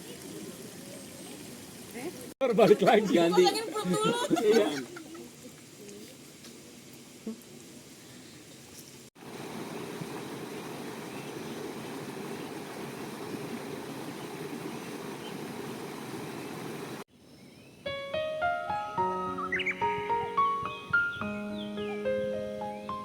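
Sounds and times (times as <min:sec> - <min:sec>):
running water: 0:00.0 - 0:17.1
piano-like keyboard music: 0:17.8 - 0:23.0.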